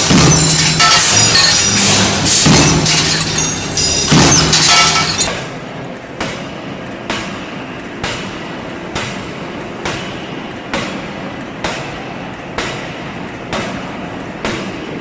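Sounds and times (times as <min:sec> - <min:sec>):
crashing glass-shattering hits: 0:00.0 - 0:05.3
machine clatter: 0:00.0 - 0:05.5.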